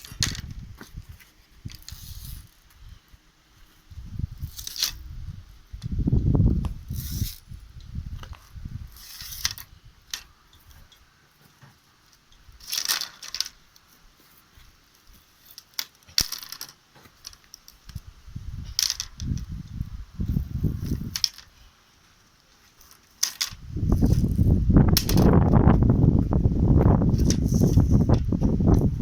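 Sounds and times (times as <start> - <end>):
rustling and scraping handling noise: 0.0 - 29.0
low bumps: 23.6 - 29.0.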